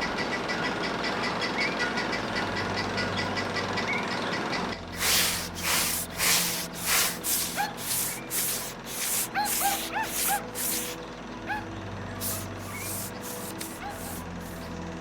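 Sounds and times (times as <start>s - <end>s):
rhythmic rasping strokes: 5.0s - 11.6s, 12.2s - 14.7s
short arching chirps: 5.0s - 11.6s, 12.2s - 14.7s.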